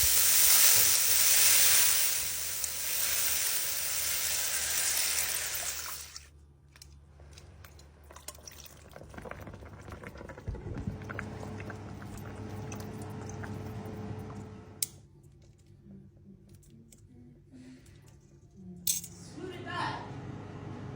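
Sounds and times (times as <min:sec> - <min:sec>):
frying sizzle: 0:00.0 - 0:06.3
liquid pouring and dripping: 0:01.6 - 0:14.6.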